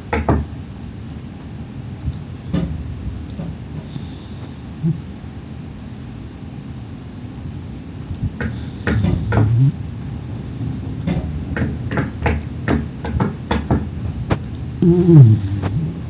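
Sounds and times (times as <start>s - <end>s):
dog snoring and snorting: 8.3s - 9.8s, 14.4s - 16.0s.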